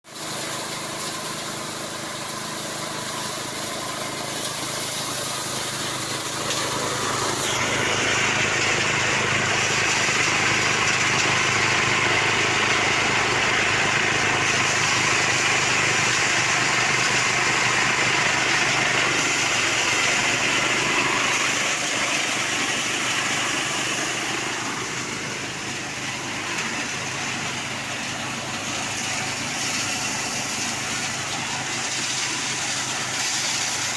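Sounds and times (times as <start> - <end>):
winnowing machine motor hum: 0.1 - 33.9.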